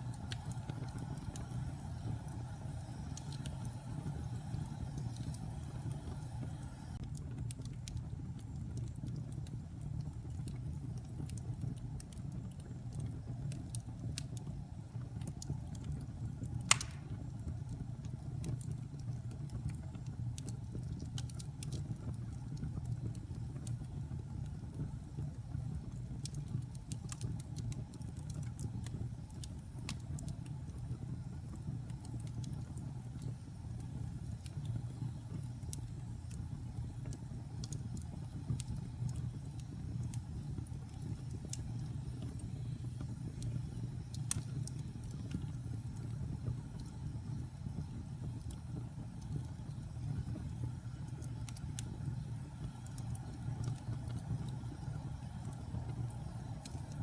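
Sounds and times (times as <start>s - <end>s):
wood fire crackling: 0.0s - 57.0s
loud pop from fire: 16.7s - 17.3s.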